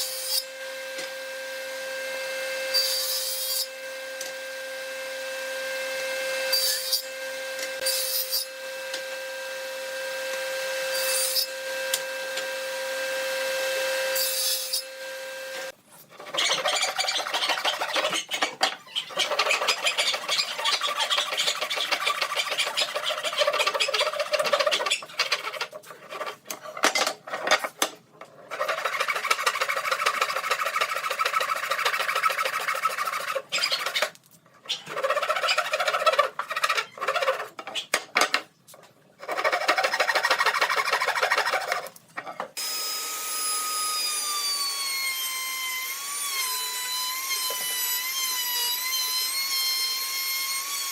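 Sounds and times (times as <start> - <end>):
small power tool motor whine: 0.0 - 15.8, 42.6 - 50.9
tool scraping wood: 15.8 - 42.6.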